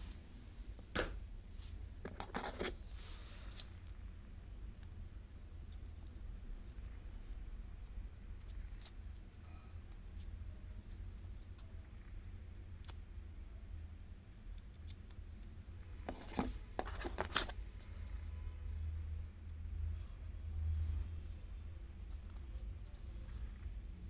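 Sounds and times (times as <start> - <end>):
packaging clicking and rustling: 16.1 - 17.6.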